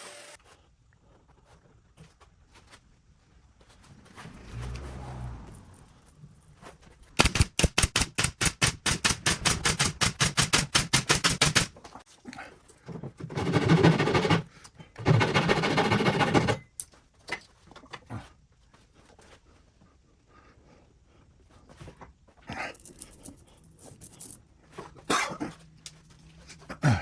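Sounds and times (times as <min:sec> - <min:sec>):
power tool bursts: 0:00.0 - 0:00.4
rapid mechanical knocks: 0:07.2 - 0:11.7.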